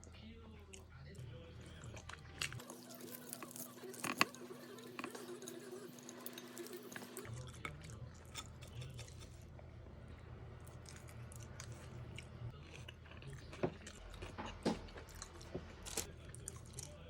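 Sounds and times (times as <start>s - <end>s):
person chewing food: 0.7s - 17.0s.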